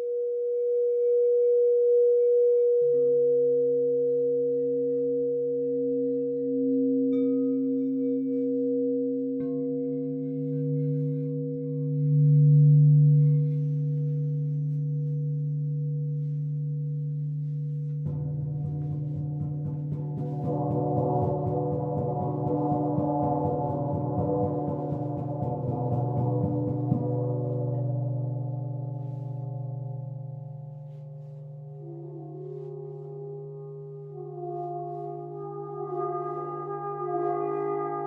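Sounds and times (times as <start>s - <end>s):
crystal singing bowls ringing: 0.0s - 33.4s
gong shimmering: 18.0s - 38.0s.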